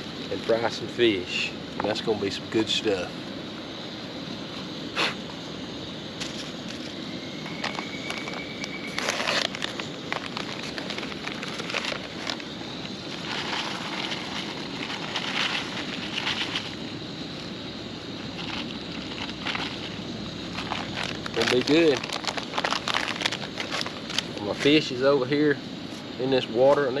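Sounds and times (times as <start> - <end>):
steady hiss: 0.0 - 27.0
fire crackling and popping: 6.1 - 24.4.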